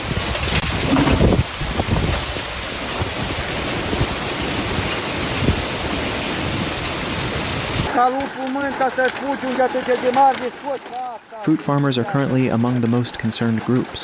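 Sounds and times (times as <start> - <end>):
wind buffeting microphone: 0.0 - 10.8
heavy rain downpour: 0.0 - 14.0.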